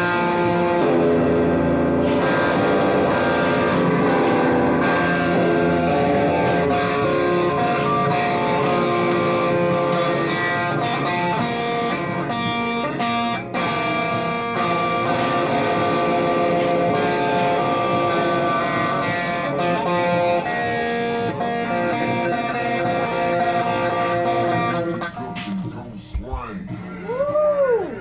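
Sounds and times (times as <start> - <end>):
slowed electric guitar music: 0.0 - 28.0.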